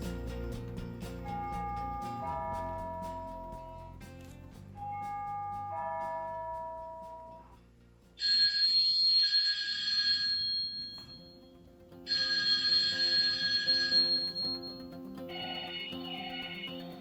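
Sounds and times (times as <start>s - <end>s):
electronic bell-like ring: 1.3s - 3.8s, 4.8s - 7.4s, 8.2s - 17.0s
melodic doorbell chime: 12.1s - 14.7s.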